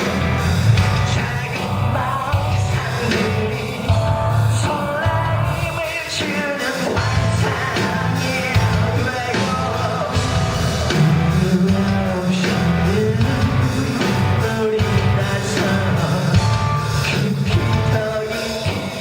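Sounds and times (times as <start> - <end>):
live rock band playing: 0.0 - 19.0
person singing: 0.0 - 19.0.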